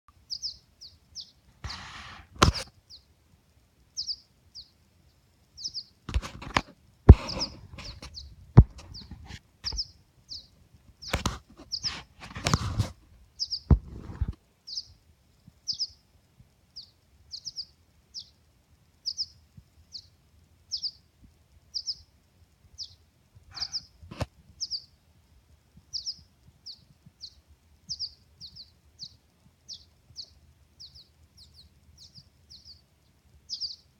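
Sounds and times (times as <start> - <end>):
baby birds cheeping: 0.1 - 3.2, 3.8 - 25.0, 25.8 - 33.9
loud knocks: 6.4 - 8.0.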